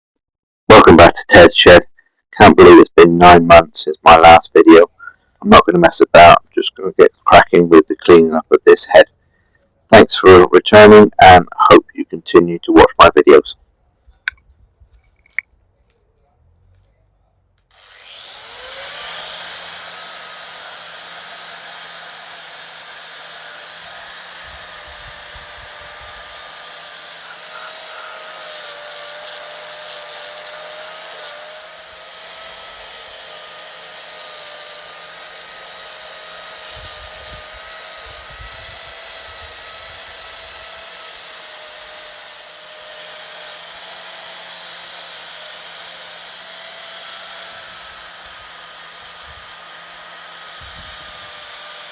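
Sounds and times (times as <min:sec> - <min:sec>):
rotary tool whining: 0:17.6 - 0:51.9.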